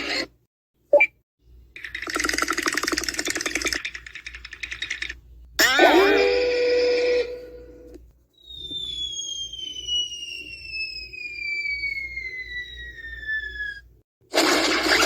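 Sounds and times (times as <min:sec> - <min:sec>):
cartoon falling whistle: 0:08.4 - 0:13.9.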